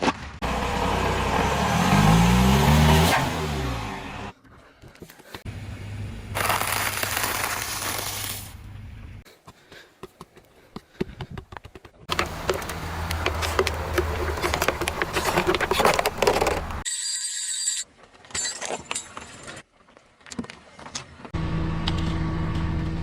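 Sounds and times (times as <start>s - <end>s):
car engine hum: 0.4s - 4.3s, 12.1s - 16.8s
tyre crushing objects: 11.0s - 16.8s.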